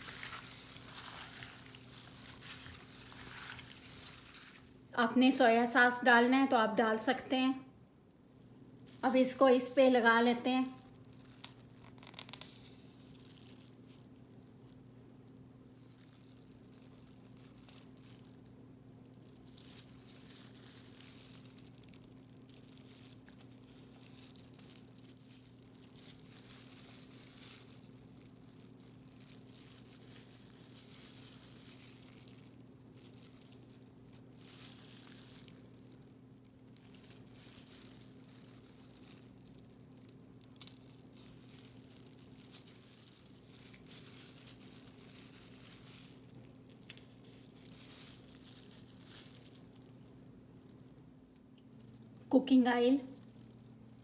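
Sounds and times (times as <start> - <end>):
food squishing onto skewers: 0.0 - 4.8.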